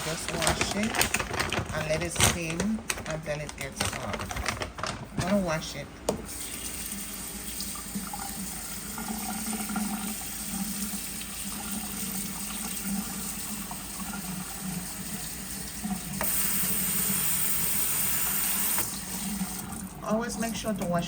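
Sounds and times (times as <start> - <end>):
tap running: 6.1 - 6.4, 15.8 - 19.8.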